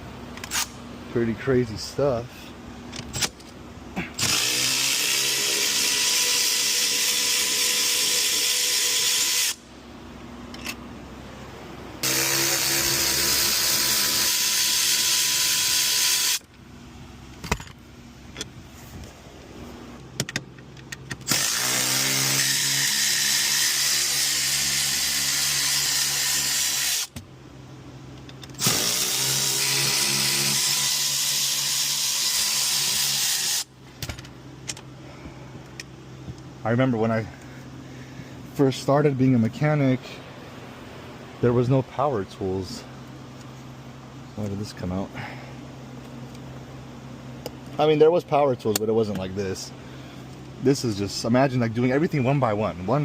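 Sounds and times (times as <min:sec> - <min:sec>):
cordless power tool spinning: 0:04.2 - 0:09.6, 0:12.0 - 0:16.4, 0:21.2 - 0:27.2, 0:28.6 - 0:33.7.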